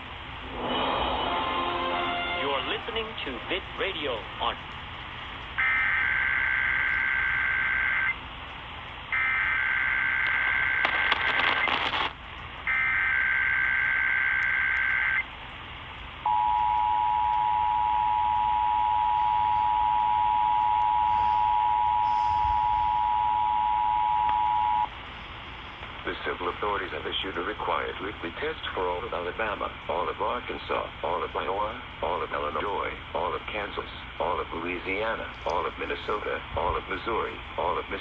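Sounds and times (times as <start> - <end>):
static crackle: 0.0 - 38.0
buzzy digital data tones: 5.6 - 8.2, 9.1 - 12.1, 12.7 - 15.2
two-tone attention signal: 16.3 - 24.9.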